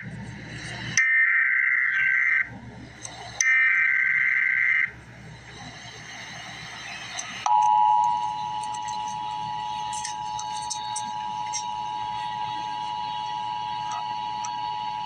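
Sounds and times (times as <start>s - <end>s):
low hum: 4.0s - 15.0s
two-tone attention signal: 7.5s - 15.0s
raspy digital screeches: 8.2s - 15.0s.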